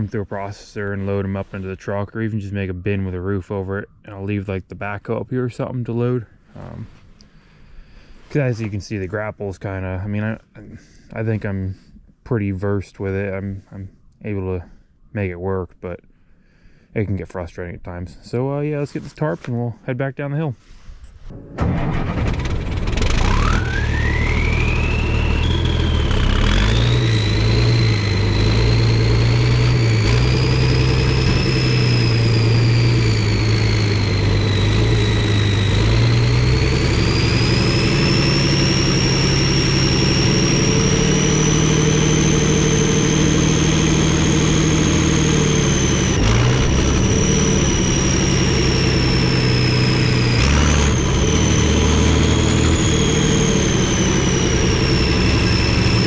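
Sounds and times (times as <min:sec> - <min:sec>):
high whine: 0:21.3 - 0:56.0
diesel truck engine running: 0:21.4 - 0:56.0.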